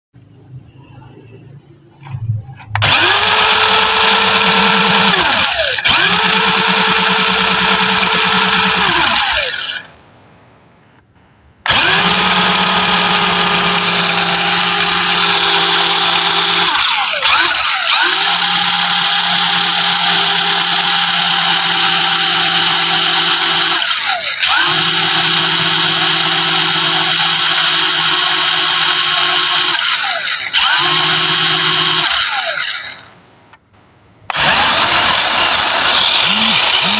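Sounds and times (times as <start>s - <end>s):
toy car electric motor whining: 2.8s - 9.9s, 11.7s - 33.1s, 34.3s - 36.9s.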